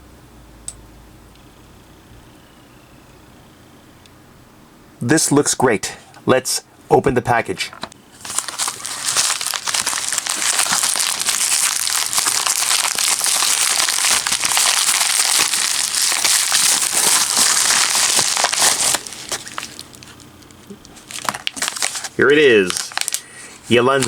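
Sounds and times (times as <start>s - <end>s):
package crinkling and tearing: 8.2s - 24.0s.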